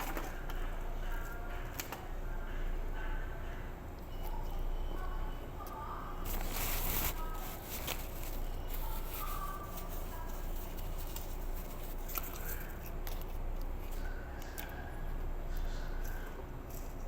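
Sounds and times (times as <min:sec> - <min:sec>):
chewing and tearing food: 0:04.0 - 0:17.0.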